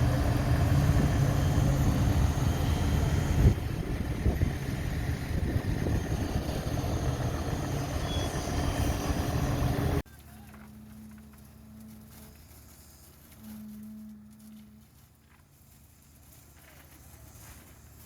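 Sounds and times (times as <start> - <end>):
diesel engine running: 0.0 - 10.0.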